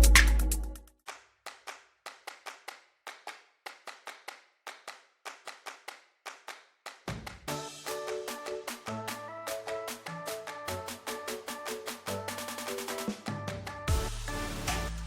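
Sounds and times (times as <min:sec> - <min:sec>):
electronic music with bass line: 0:00.0 - 0:00.8, 0:07.5 - 0:15.0.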